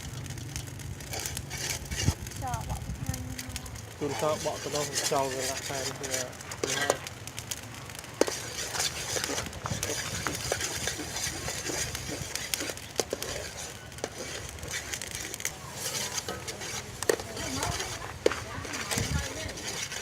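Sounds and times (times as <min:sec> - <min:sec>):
utensils clicking against pots: 0:03.4 - 0:07.1, 0:08.2 - 0:20.0.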